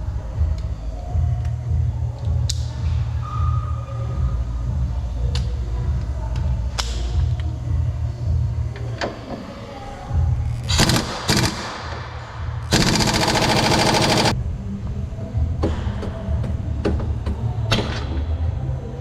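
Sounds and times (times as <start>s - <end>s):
impact wrench hammering: 10.7s - 11.6s, 12.7s - 14.4s.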